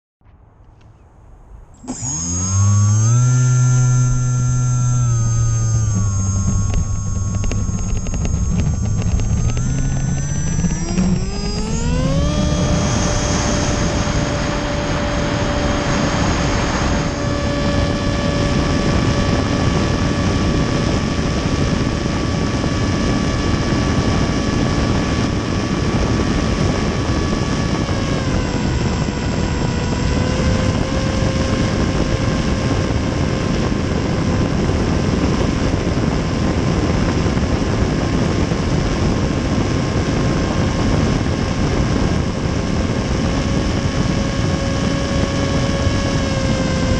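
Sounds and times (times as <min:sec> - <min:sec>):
model plane motor whining: 0:01.8 - 0:46.9
heavy wind rush: 0:05.8 - 0:28.0.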